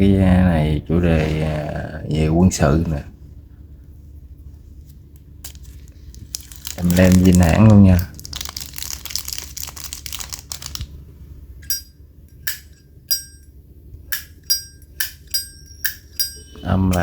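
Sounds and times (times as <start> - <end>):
crinkly rustling: 4.8 - 11.0.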